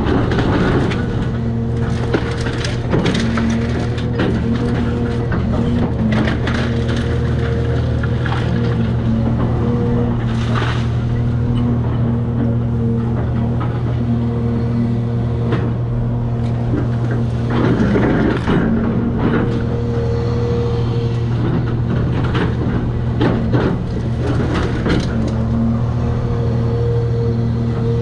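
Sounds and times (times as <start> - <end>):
debris crunching and crashing: 0.0 - 12.0, 21.2 - 26.0
excavator diesel engine: 0.0 - 28.0.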